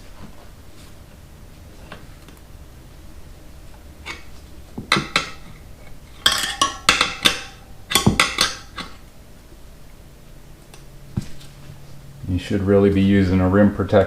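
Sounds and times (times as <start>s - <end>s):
tire levers clinking on wheel rim: 4.9s - 9.0s.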